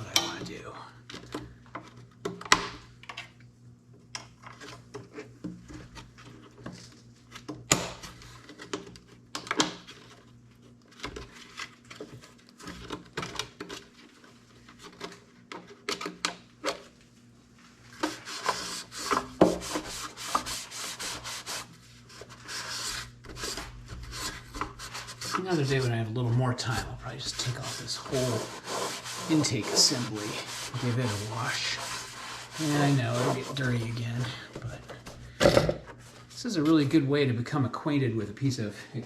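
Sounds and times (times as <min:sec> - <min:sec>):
scrubbing parts by hand: 0:18.0 - 0:34.7.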